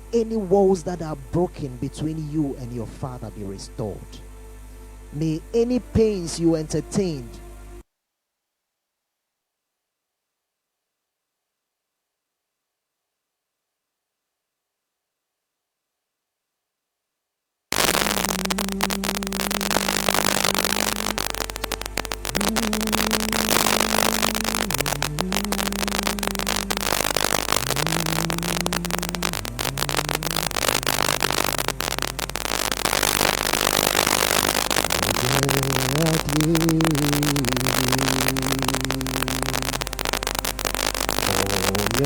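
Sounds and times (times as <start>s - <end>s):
slow worship melody: 0.0s - 7.8s, 17.8s - 42.0s
steady low hum: 0.0s - 7.8s, 17.7s - 42.0s
crackling static and hiss: 0.0s - 7.9s, 17.6s - 42.0s.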